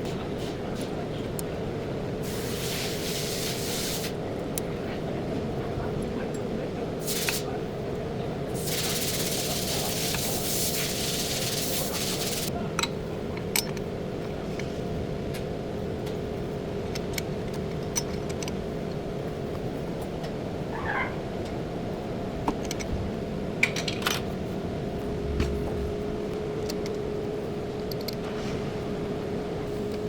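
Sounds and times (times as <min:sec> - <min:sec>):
hissing spray: 0:02.2 - 0:04.1, 0:07.0 - 0:07.5, 0:08.6 - 0:12.5
steady hum: 0:18.7 - 0:30.0.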